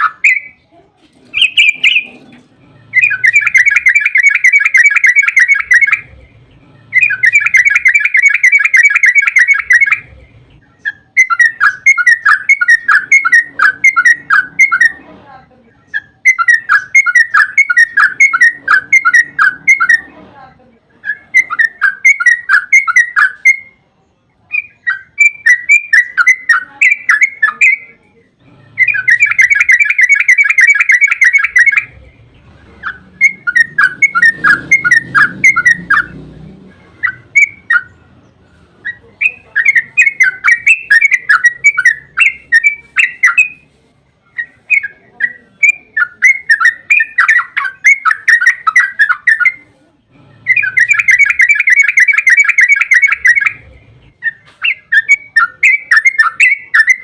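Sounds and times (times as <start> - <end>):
bird singing chattering notes: 0.0 - 0.7, 1.3 - 15.0, 15.7 - 20.1, 20.9 - 57.0.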